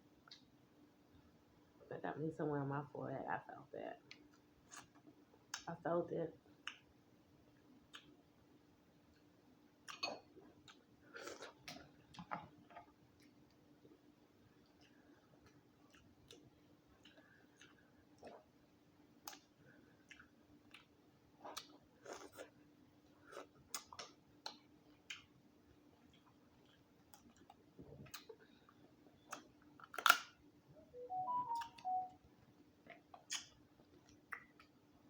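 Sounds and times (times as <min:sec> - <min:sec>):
faint steady hum: 0:00.0 - 0:35.0
wet chewing: 0:19.2 - 0:22.6.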